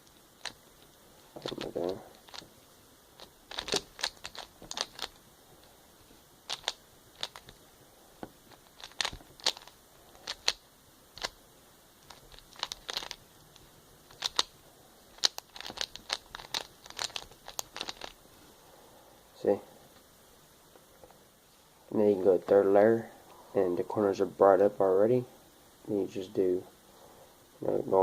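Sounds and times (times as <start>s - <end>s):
plastic cube clicking: 3.2s - 5.2s, 6.5s - 7.6s, 8.5s - 10.6s, 11.2s - 11.4s, 12.0s - 18.2s.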